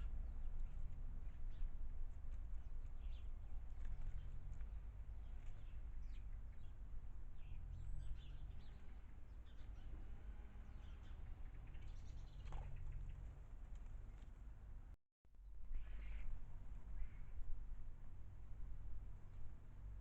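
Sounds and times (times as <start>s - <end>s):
steady low rumble: 0.0s - 9.1s
small birds chirping: 2.6s - 10.0s, 10.8s - 14.2s.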